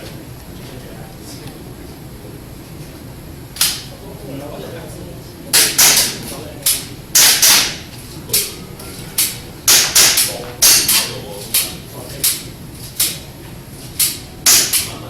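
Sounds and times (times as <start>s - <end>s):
airsoft pistol shots: 7.2s - 7.8s, 9.7s - 10.9s, 14.5s - 14.9s.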